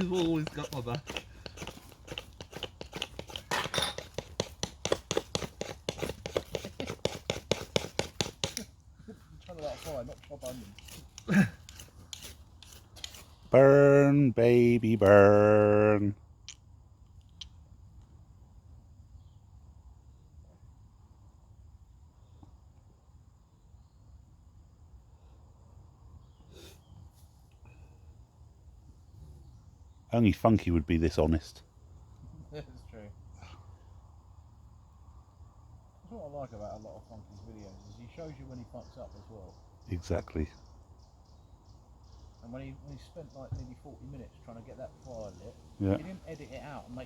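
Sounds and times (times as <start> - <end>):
ferrocerium rod scraped with striker: 0.0 - 8.7, 9.4 - 13.4.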